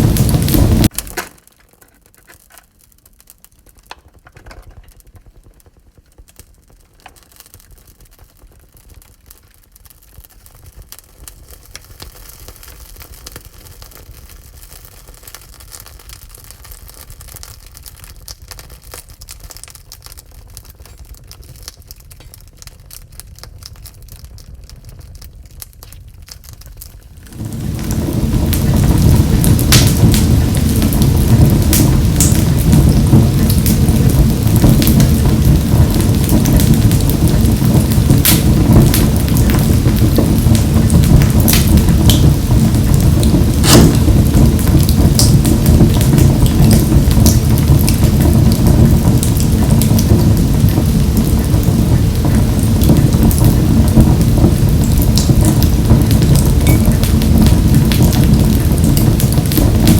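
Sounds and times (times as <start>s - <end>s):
wood fire crackling: 0.0s - 59.9s
low steady rumble: 27.2s - 59.9s
loud rushing noise: 27.3s - 32.2s, 43.2s - 45.7s.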